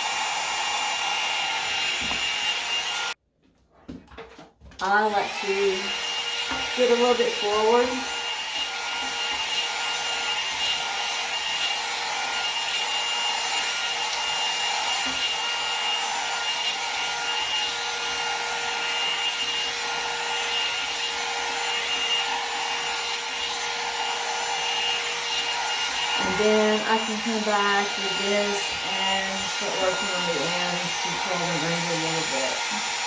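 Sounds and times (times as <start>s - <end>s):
hair dryer blowing air: 0.0s - 3.2s, 4.8s - 33.0s.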